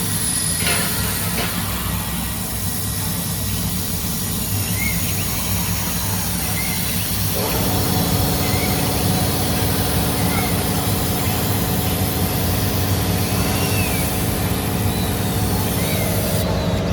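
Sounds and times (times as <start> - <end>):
low machine rumble: 0.0 - 16.9.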